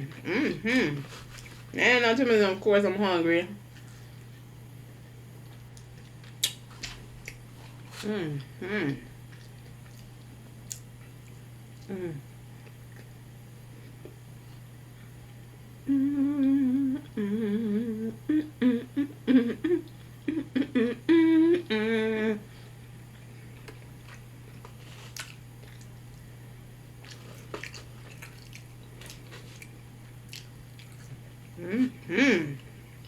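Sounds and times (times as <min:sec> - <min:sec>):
woman humming: 0:00.0 - 0:01.1, 0:08.0 - 0:09.2, 0:11.8 - 0:12.3, 0:15.8 - 0:22.5, 0:31.5 - 0:32.7.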